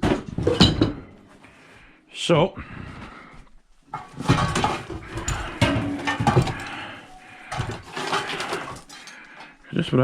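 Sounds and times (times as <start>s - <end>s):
scrap metal clattering: 3.9s - 9.6s.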